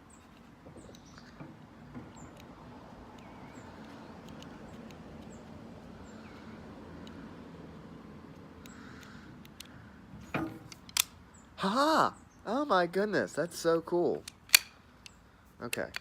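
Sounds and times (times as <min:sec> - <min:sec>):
bike lock clicking: 0:08.6 - 0:11.2, 0:14.2 - 0:16.0.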